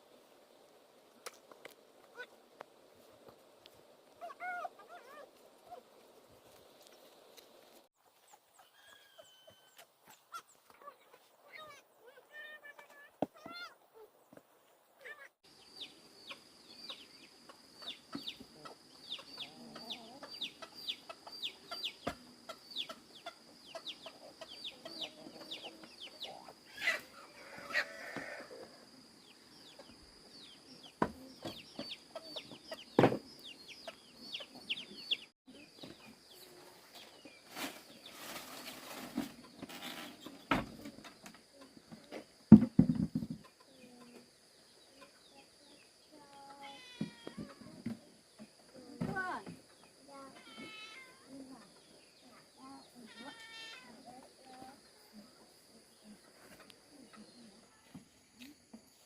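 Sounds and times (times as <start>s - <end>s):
chickens clucking: 8.0s - 53.3s, 54.0s - 58.9s
chicks peeping: 15.8s - 27.9s, 29.2s - 38.1s
knocks: 42.5s - 43.4s.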